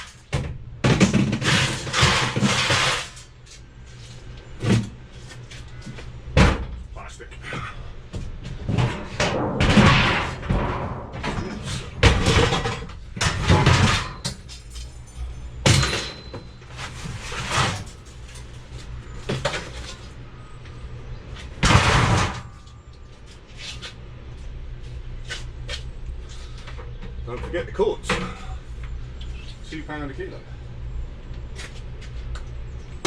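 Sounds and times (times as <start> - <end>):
steady low hum: 0.0 - 33.0
scrap metal clattering down: 0.9 - 3.4, 8.6 - 18.5.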